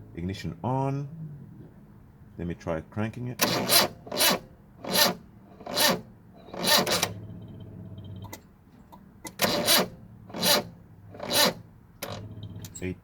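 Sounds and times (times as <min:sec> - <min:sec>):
starter motor cranking slowly: 0:03.4 - 0:08.3, 0:09.3 - 0:12.7.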